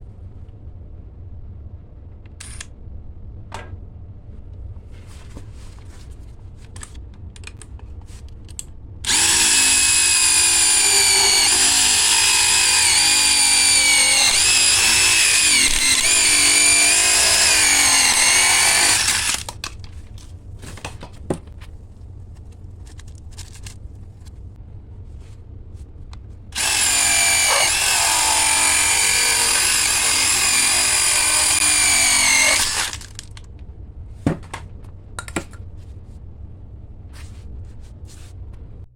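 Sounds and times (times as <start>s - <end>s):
impact driver whining: 9.1s - 19.5s, 26.6s - 33.3s.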